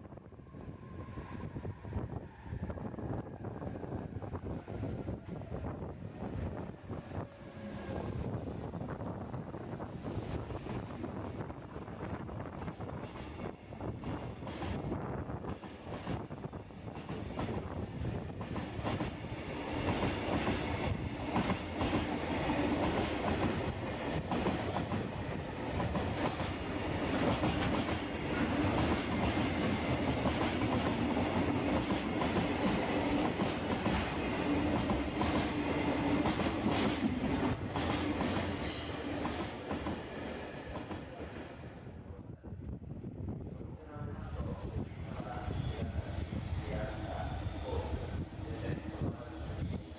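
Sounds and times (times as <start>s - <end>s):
train wheels clicking over rail joints: 16.9s - 19.2s, 19.8s - 40.1s.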